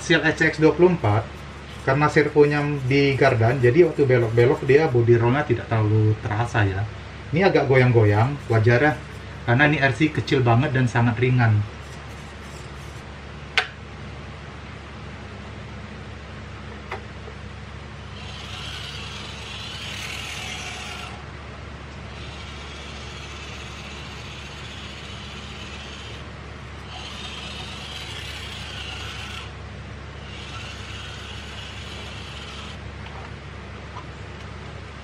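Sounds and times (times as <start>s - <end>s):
small electric motor whirring: 0.0s - 5.0s, 7.7s - 10.2s, 11.8s - 13.1s, 18.0s - 21.2s, 22.0s - 32.8s.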